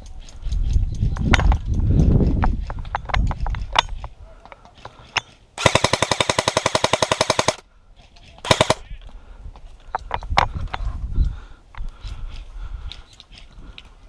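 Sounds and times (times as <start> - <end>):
airsoft gun firing bursts: 5.6 - 7.6, 8.4 - 8.9.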